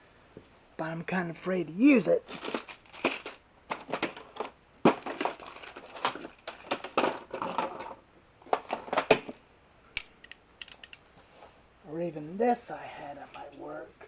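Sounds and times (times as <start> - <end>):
hand tools clinking and rustling: 1.2 - 9.4.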